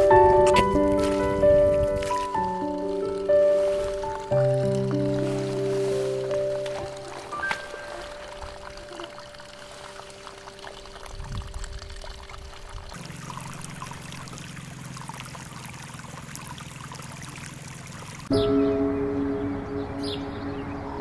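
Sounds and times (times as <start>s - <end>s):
water running: 0.0s - 18.3s
low hum: 18.3s - 21.0s.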